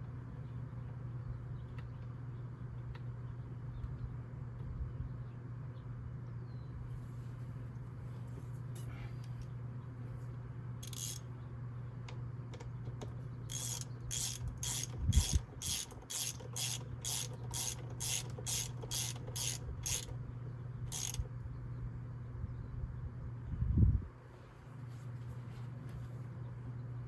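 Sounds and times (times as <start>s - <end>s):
steady low hum: 0.0s - 27.0s
hand ratchet clicking: 10.8s - 11.2s, 13.5s - 20.1s, 20.9s - 21.2s.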